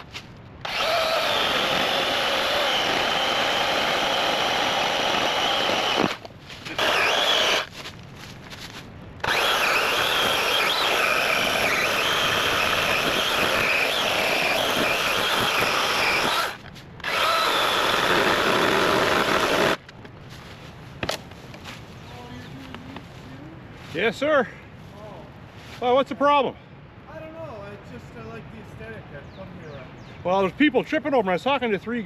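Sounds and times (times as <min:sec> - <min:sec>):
electric chainsaw cutting log: 0:00.6 - 0:07.7, 0:09.2 - 0:19.8.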